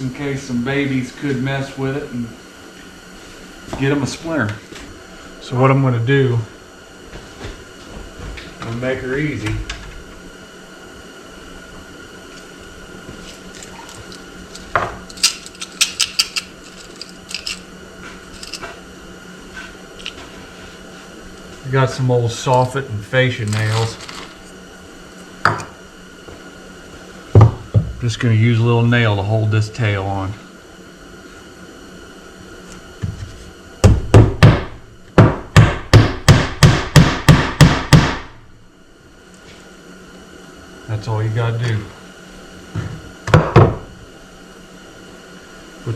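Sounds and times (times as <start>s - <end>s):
metal nails clinking: 13.6s - 17.7s, 18.3s - 18.7s.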